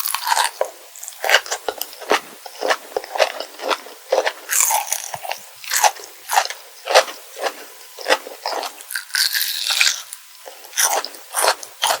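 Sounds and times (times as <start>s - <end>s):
crunching and chewing candy: 0.0s - 12.0s.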